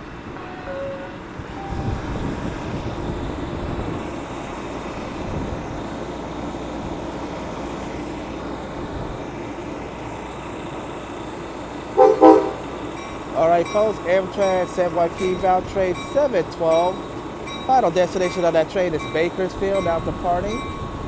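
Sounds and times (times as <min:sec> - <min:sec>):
diesel locomotive rumbling: 0:00.0 - 0:21.0.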